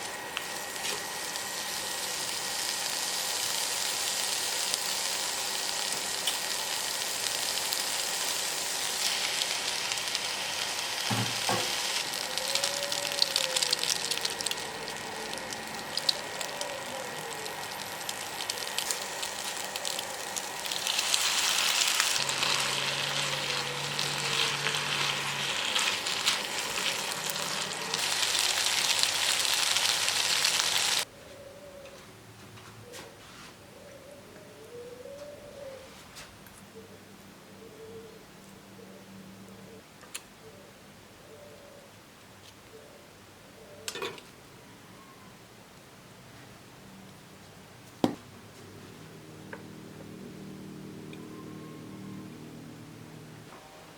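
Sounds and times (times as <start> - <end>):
food sizzling in hot oil: 0.0 - 31.1.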